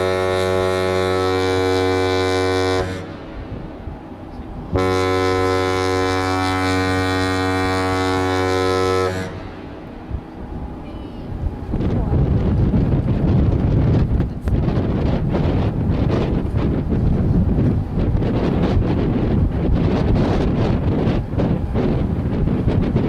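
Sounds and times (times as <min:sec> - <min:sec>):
ship horn blasts: 0:00.0 - 0:11.6.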